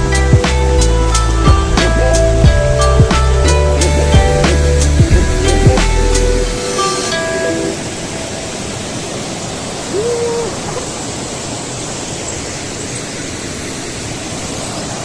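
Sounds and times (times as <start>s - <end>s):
water rushing: 0.0s - 15.0s.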